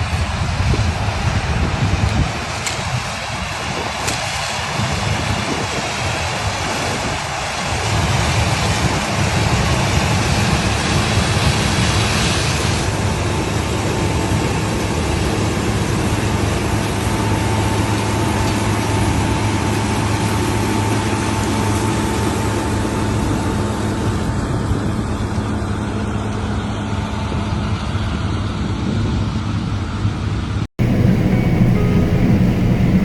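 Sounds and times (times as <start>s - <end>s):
farm machine engine droning: 0.0s - 28.5s, 30.8s - 33.0s
faint whine: 30.8s - 33.0s.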